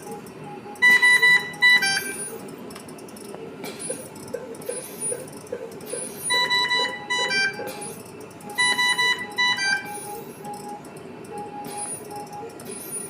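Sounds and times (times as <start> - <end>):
rapid high alarm beeps: 0.0 - 3.2, 3.8 - 13.0
slow lower alarm beeps: 0.4 - 2.3, 6.3 - 7.7, 8.4 - 12.5.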